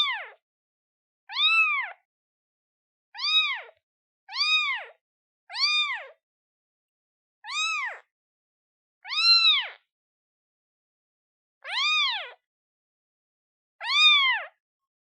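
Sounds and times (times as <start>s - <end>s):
kitten meowing: 0.0s - 0.4s, 1.3s - 2.0s, 3.2s - 6.2s, 7.4s - 8.1s, 9.0s - 9.8s, 11.7s - 12.4s, 13.8s - 14.6s.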